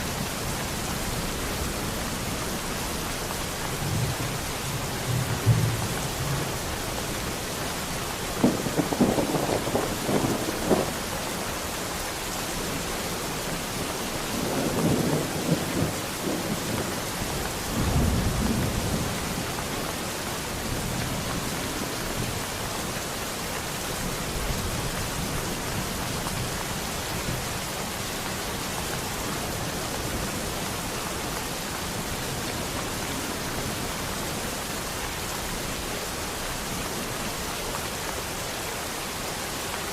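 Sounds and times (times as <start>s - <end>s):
steady rain: 0.0s - 39.9s
thunder rumbling: 8.4s - 11.3s, 13.8s - 19.8s.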